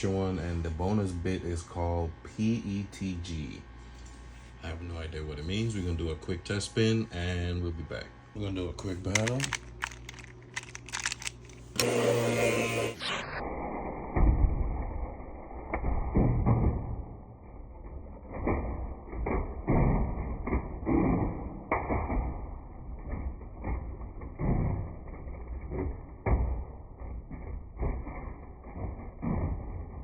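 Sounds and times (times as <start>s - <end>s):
low whirring rumble: 0.0s - 16.2s.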